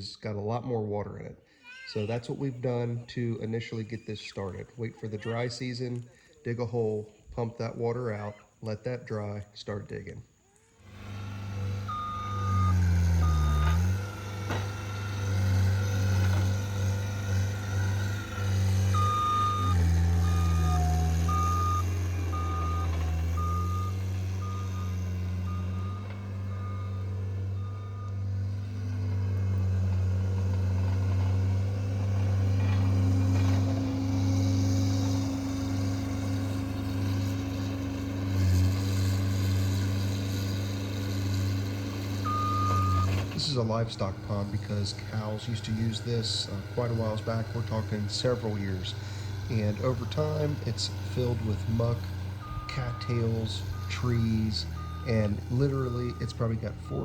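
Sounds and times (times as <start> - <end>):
diesel engine running under load: 10.8 - 57.0
backup alarm beeping: 11.7 - 14.4, 17.6 - 28.3, 42.2 - 43.2, 50.5 - 57.0.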